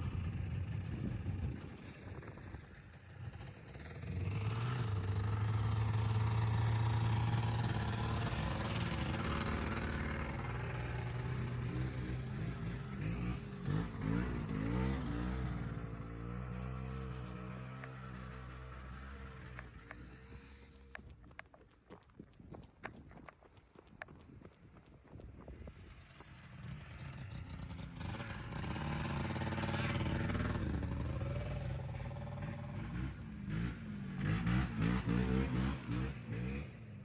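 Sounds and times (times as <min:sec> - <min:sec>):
snowmobile engine revving: 0:03.3 - 0:21.0, 0:26.8 - 0:36.8.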